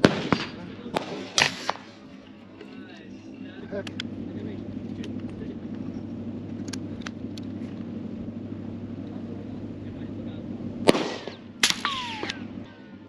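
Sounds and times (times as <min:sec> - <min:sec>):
suppressed gunshot crack: 0:00.0 - 0:02.0, 0:10.8 - 0:12.5
steady low rumble: 0:00.0 - 0:13.0.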